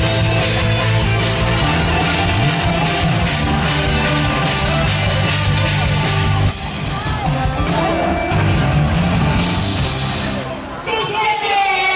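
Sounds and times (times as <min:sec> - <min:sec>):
rock band playing: 0:00.0 - 0:11.6.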